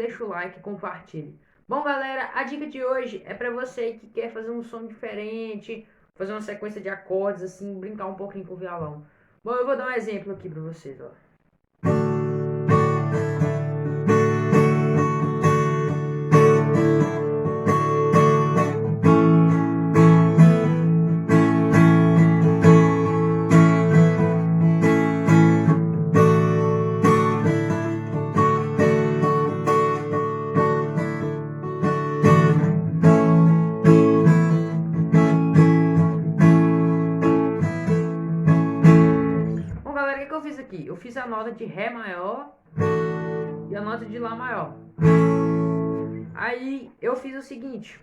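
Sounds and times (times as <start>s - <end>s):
acoustic guitar strumming: 11.8s - 39.9s, 42.7s - 46.4s.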